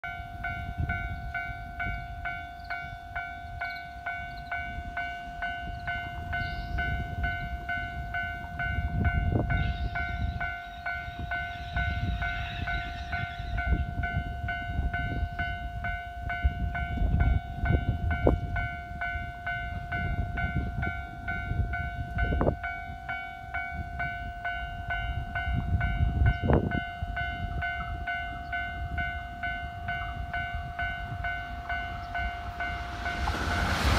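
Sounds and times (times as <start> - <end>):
level crossing warning bell: 0.0 - 33.9
low rumble: 31.2 - 33.9.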